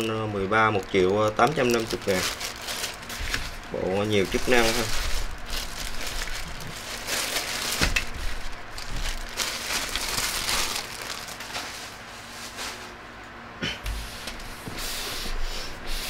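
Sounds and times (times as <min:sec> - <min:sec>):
rustling and crinkling: 0:00.7 - 0:13.0.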